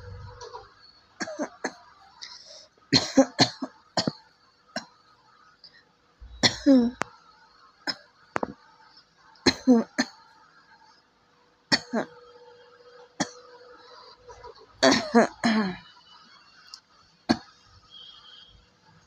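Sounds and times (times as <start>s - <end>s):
person dry coughing: 3.0s - 4.2s, 6.4s - 7.0s, 9.5s - 10.2s, 11.7s - 12.1s, 14.8s - 15.8s.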